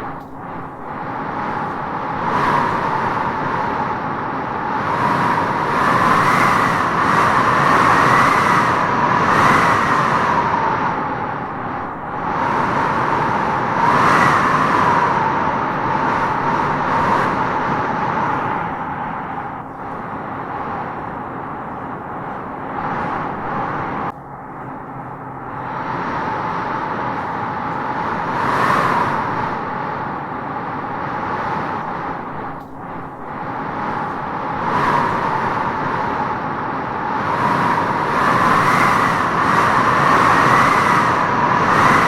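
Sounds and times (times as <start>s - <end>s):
wind howling through trees: 0.0s - 42.0s.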